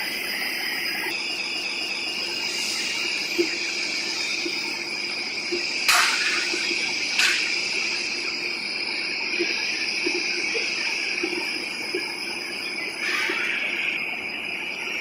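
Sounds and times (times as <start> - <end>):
shot blasting machine hiss: 1.9 - 14.2.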